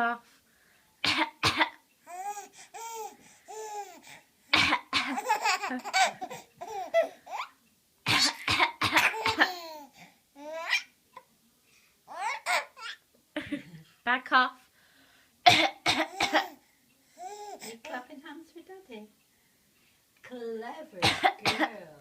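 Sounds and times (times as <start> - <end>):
baby laughing: 2.1 - 4.2, 5.1 - 7.6, 9.0 - 10.9, 12.1 - 13.0
loud coughs: 4.5 - 5.3, 8.1 - 9.6, 15.5 - 16.6, 21.0 - 21.8.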